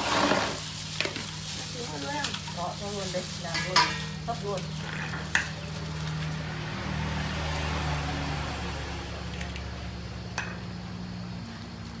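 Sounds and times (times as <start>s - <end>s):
low mechanical hum: 8.3s - 12.0s.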